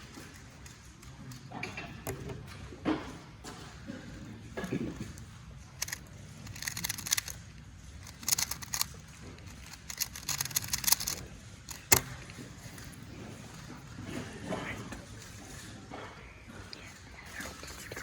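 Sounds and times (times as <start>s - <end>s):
plastic puzzle cube clicking: 5.8s - 7.4s, 8.0s - 12.2s.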